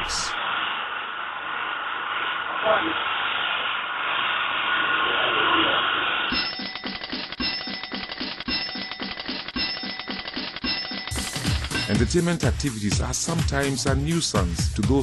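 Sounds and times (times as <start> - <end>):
steady rushing noise: 0.0 - 8.4
rhythmic ringing: 6.1 - 14.4.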